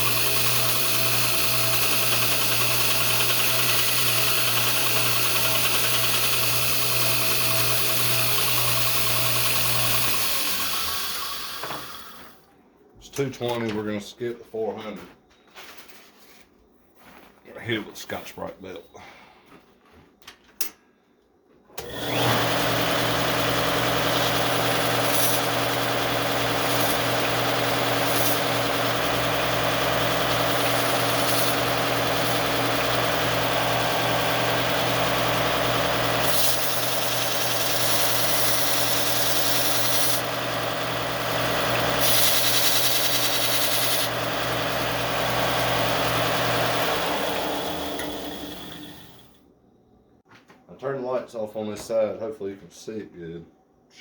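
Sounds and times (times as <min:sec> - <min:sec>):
motor spinning down: 0:00.0 - 0:12.3, 0:21.8 - 0:49.3
belt grinder motor humming: 0:00.0 - 0:12.4, 0:21.8 - 0:49.3
grinding belt hiss: 0:22.6 - 0:48.9.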